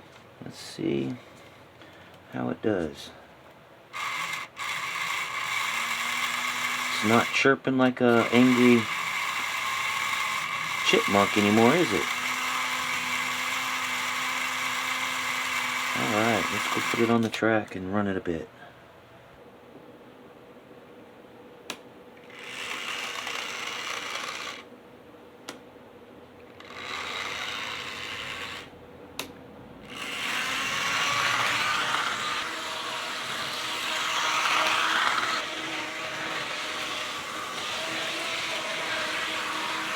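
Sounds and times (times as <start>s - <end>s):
model locomotive motor whirring: 3.9s - 7.5s, 8.1s - 17.3s, 22.3s - 24.7s, 26.6s - 28.7s, 29.9s - 39.9s.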